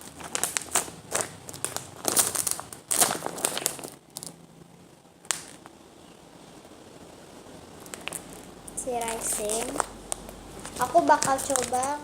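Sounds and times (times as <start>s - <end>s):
plastic packaging crinkling: 0.0s - 4.4s, 5.2s - 5.7s, 7.8s - 12.0s.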